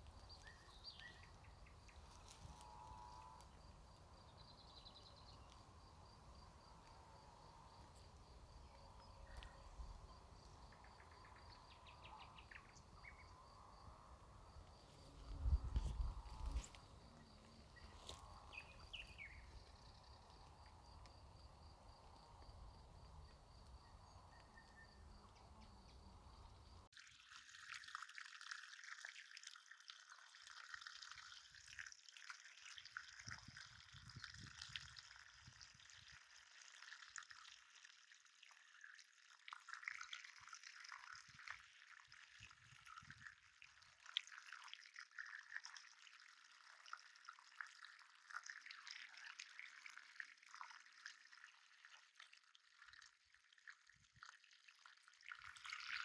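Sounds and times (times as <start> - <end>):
water trickling and dripping: 0.0 - 13.9, 14.7 - 24.5, 26.8 - 56.0
soft outdoor hiss: 0.0 - 27.4
faint bird chirps: 0.2 - 3.4, 8.0 - 13.6, 16.4 - 20.4, 23.6 - 26.8.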